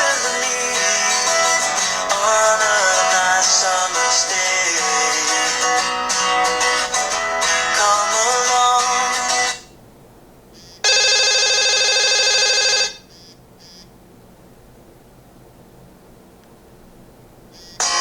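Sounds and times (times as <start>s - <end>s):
phone ringtone plucked melody: 10.8s - 13.0s, 17.6s - 18.0s
steady buzzing tone: 17.5s - 18.0s.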